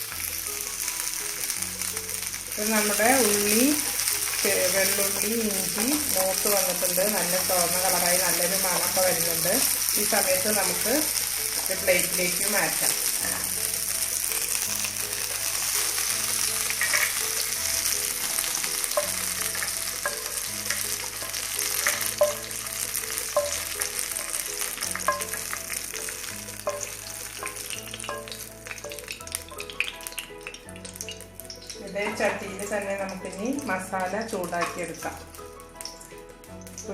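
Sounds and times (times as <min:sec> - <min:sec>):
aromatics sizzling in oil: 0:00.0 - 0:36.9
soft background music: 0:00.0 - 0:36.9
spoon stirring in a pan: 0:15.6 - 0:30.6.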